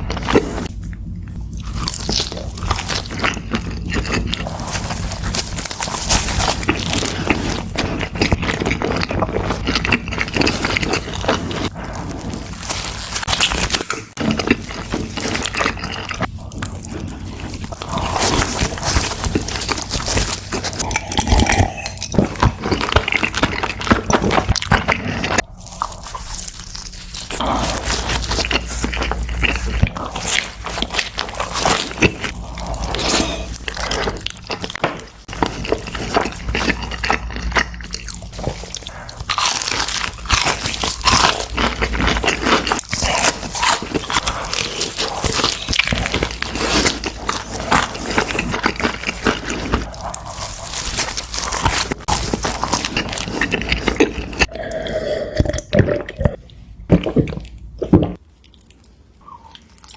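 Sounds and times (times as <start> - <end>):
chewing and crunching food: 0.0 - 59.9
wet mouth sounds: 15.4 - 59.9.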